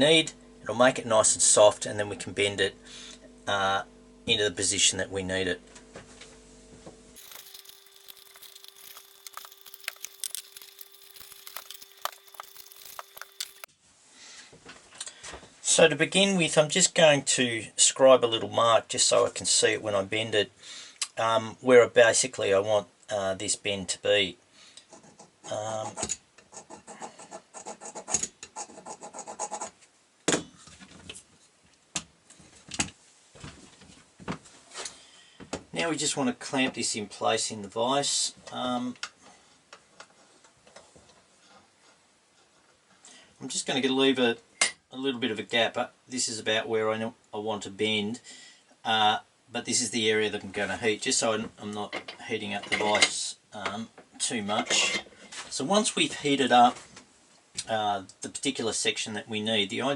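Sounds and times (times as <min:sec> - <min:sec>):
faint steady hum: 0:00.0 - 0:25.8
small objects clicking and crackling: 0:07.2 - 0:13.7.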